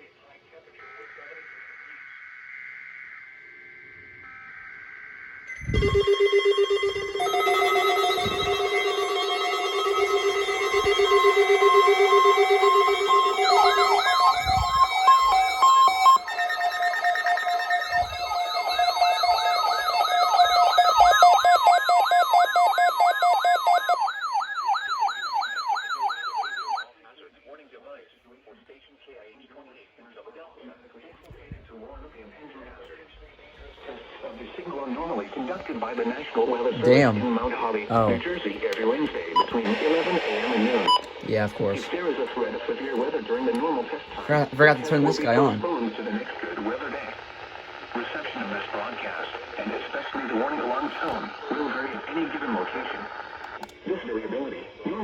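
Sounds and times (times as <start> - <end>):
faint steady tones: 0.0 - 27.3
pulsing buzzy alarm: 0.8 - 26.9, 33.9 - 53.7
electronic siren whoops: 1.1 - 26.9
higher pulsing tone: 4.2 - 26.8.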